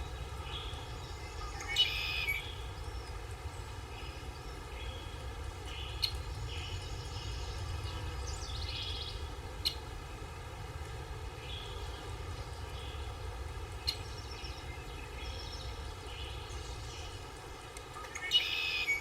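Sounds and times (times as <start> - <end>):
small birds chirping: 0.0 - 10.5, 11.4 - 19.0
bird trill: 1.4 - 2.4, 18.1 - 19.0
steady low rumble: 2.4 - 17.7.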